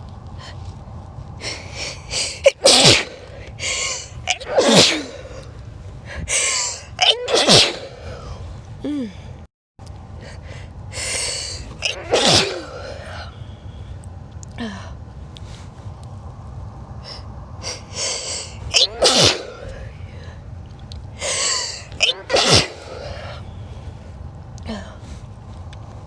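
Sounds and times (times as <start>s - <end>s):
person sneezing: 2.2s - 3.2s, 4.3s - 5.2s, 7.0s - 8.0s, 11.8s - 13.0s, 17.7s - 19.8s, 21.2s - 23.3s.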